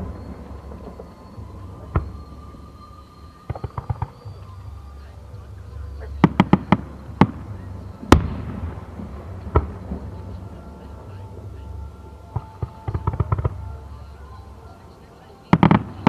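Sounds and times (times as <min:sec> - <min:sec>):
crackling pops: 0:00.0 - 0:05.1
fireworks bursting: 0:00.0 - 0:16.0
low rumble: 0:00.0 - 0:16.0.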